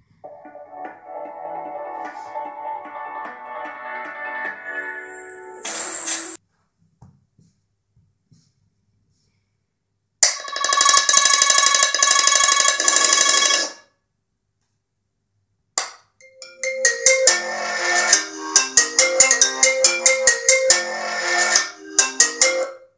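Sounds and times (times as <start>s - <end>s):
music with plucked notes: 0.3s - 5.0s.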